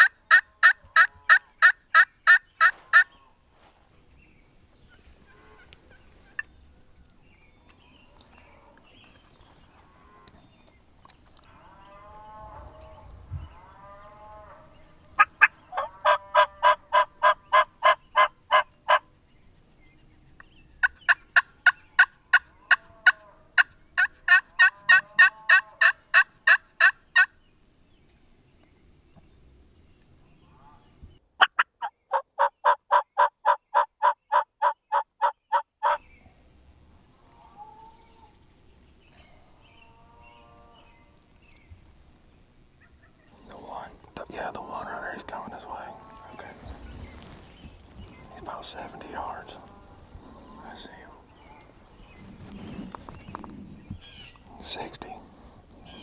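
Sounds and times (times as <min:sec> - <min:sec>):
turkey yelping: 0:00.0 - 0:03.1, 0:15.2 - 0:19.0, 0:23.6 - 0:27.3, 0:31.4 - 0:36.0.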